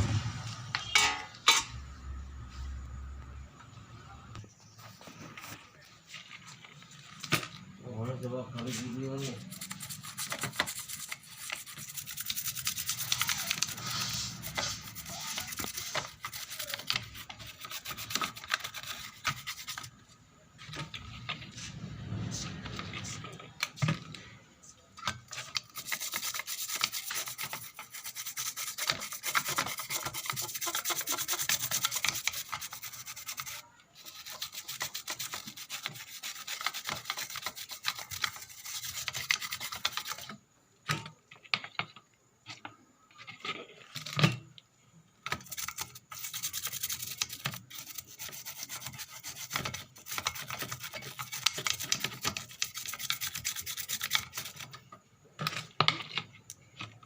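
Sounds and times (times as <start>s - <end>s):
brush scrubbing circuit board: 8.2s - 20.0s, 25.3s - 40.3s, 45.4s - 54.8s.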